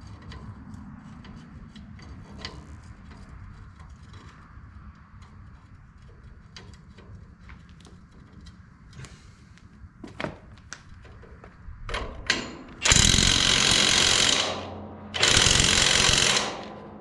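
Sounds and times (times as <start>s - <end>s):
impact wrench driving bolt: 11.9s - 17.0s.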